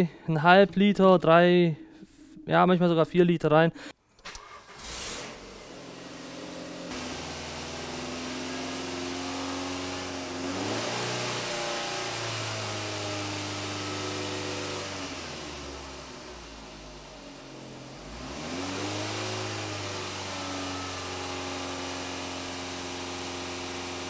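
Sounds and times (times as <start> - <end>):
car engine running and revving: 4.7 - 24.0.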